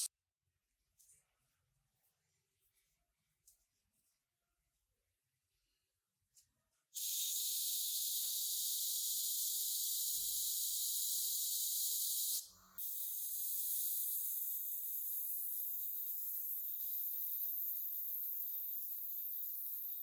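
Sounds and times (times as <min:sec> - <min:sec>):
spray paint hissing: 0:07.0 - 0:14.3.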